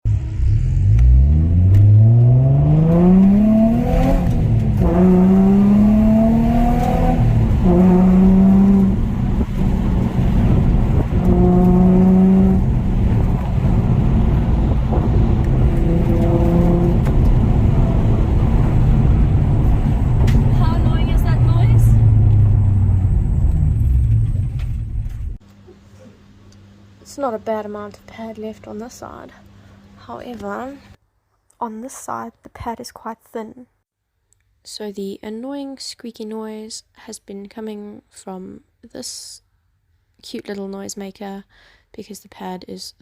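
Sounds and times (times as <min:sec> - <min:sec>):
car engine accelerating: 0:00.0 - 0:25.4
road and tyre rumble: 0:00.0 - 0:25.5.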